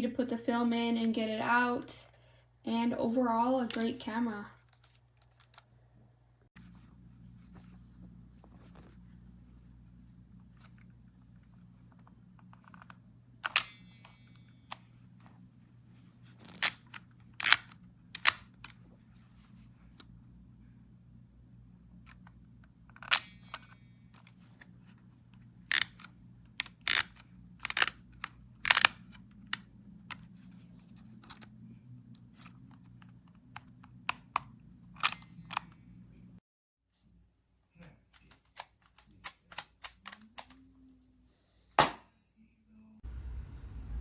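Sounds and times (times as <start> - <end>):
film camera clicks: 16.5 - 18.8, 25.7 - 29.6, 35.0 - 35.6
low hum: 43.0 - 44.0.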